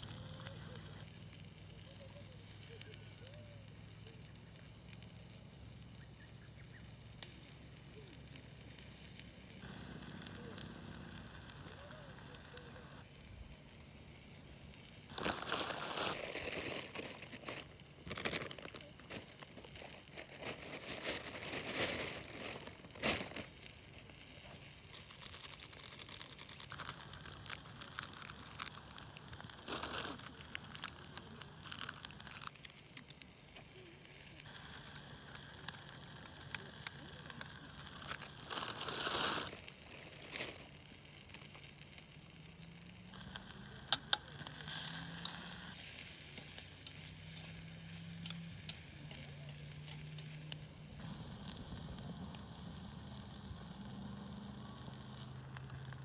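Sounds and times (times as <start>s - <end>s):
campfire crackling: 0.0s - 56.0s
crinkling and rustling: 15.0s - 53.0s.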